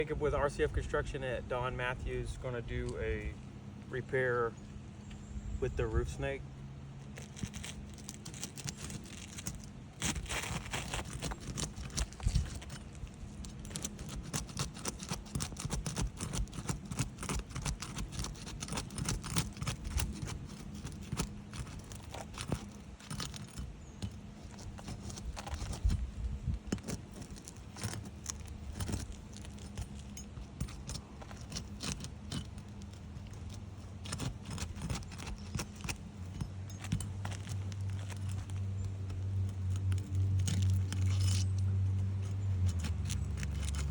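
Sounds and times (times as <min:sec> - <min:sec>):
metal tool scraping shingles: 0:07.0 - 0:43.9
metallic jangles: 0:26.7 - 0:43.9.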